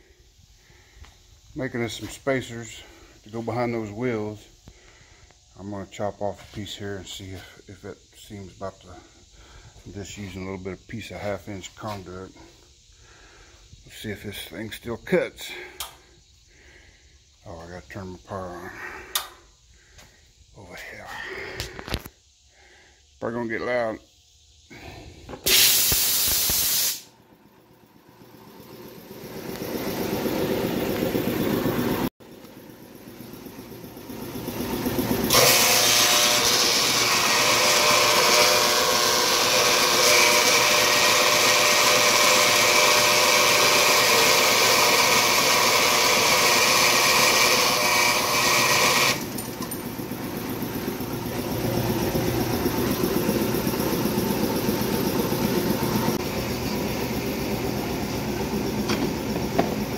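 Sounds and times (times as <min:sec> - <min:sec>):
power saw cutting metal pipe: 0:35.0 - 0:49.8.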